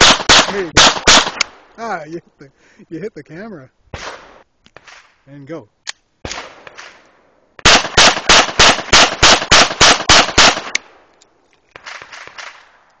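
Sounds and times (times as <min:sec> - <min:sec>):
pistol fired rapidly: 0:00.0 - 0:01.4, 0:07.6 - 0:10.8.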